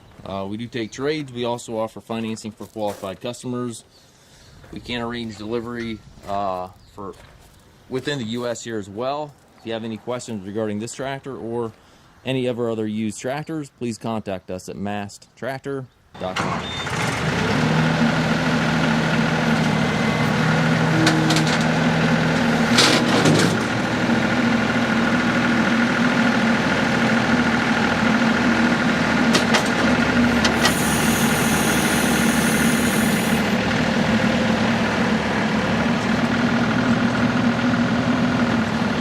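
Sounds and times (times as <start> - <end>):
tractor diesel engine running: 16.2 - 39.0
high-pitched whine: 19.6 - 22.9, 30.5 - 33.6.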